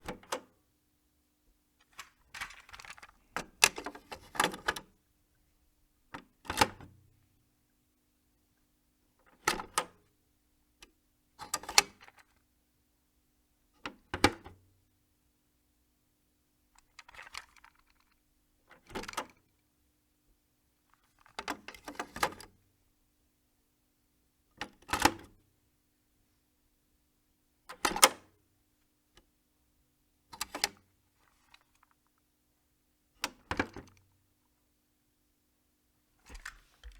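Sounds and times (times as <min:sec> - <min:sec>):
cassette deck plastic clicks: 0:36.3 - 0:36.9.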